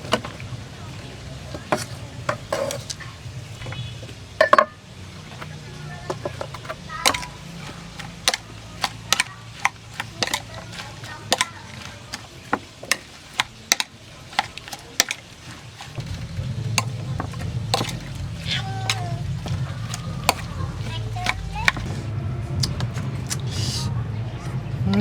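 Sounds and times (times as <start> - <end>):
utensils clinking against cookware: 0.0 - 24.6
low steady hum: 13.0 - 25.0.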